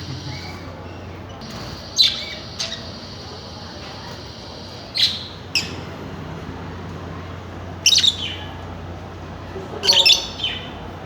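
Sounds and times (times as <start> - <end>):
birds chirping high-pitched: 0.0 - 6.0, 7.8 - 8.8, 9.7 - 11.0.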